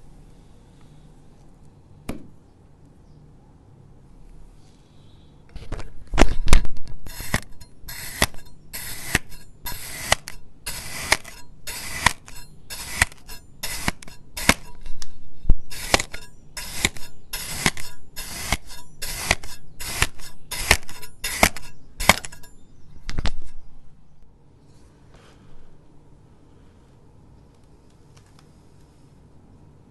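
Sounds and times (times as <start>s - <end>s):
blade clicking: 6.2s - 23.6s.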